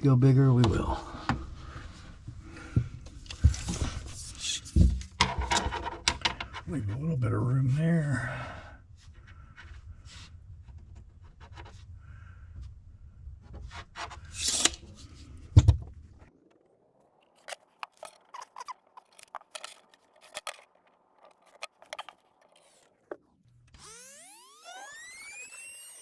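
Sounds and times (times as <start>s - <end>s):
scratching and scraping strokes: 13.6s - 15.3s, 17.2s - 23.1s.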